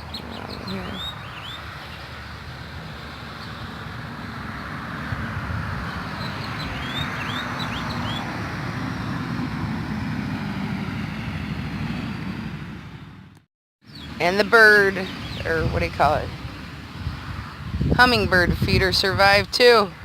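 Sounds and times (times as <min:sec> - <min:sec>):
bird chirps: 0:00.0 - 0:02.1, 0:06.2 - 0:08.3.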